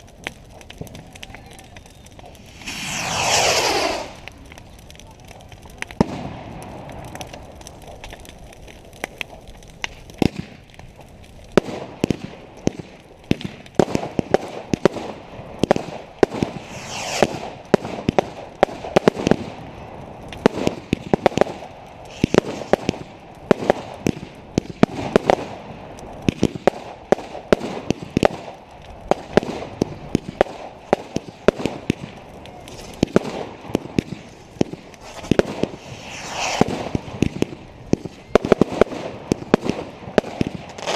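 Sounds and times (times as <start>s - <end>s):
fireworks bangs and crackles: 0.0s - 40.9s
firework whistle: 1.3s - 4.4s, 16.4s - 17.6s, 22.1s - 23.0s, 35.0s - 37.4s.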